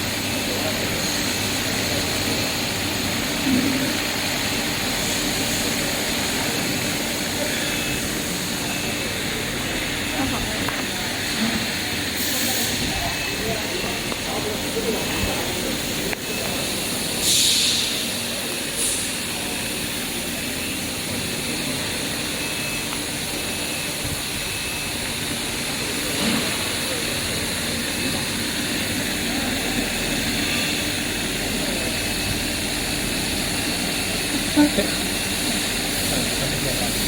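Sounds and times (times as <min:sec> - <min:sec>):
brief hisses: 0:17.2 - 0:18.0.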